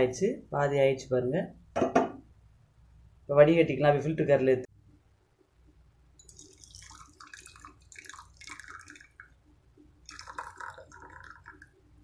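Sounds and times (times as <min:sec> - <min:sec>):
tea pouring through a strainer: 0:06.2 - 0:09.4, 0:10.0 - 0:11.9.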